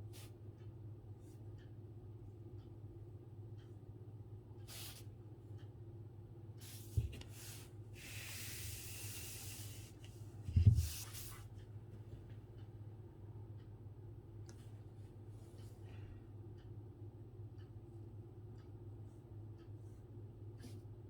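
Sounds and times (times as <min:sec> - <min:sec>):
brush strokes on paper: 0:06.6 - 0:10.0, 0:10.6 - 0:11.4.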